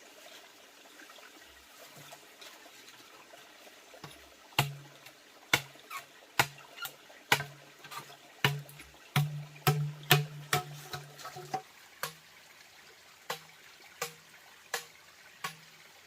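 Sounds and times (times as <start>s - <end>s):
faint trickling water: 0.0s - 16.0s
sharp ringing knocks: 8.5s - 11.1s.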